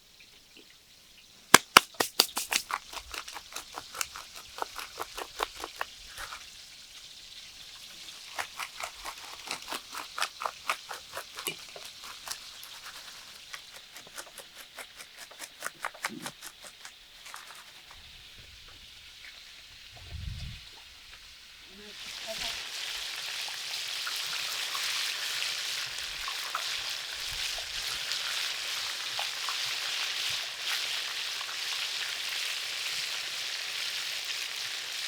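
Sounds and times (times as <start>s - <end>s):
hot oil crackling and popping: 1.5s - 19.9s, 21.0s - 35.0s
faint sizzle: 17.6s - 35.0s.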